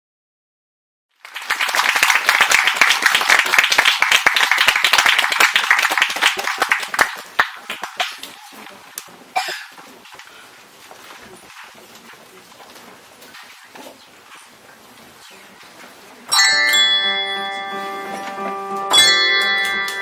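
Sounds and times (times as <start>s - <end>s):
audience applauding: 1.2s - 9.0s, 17.8s - 20.0s.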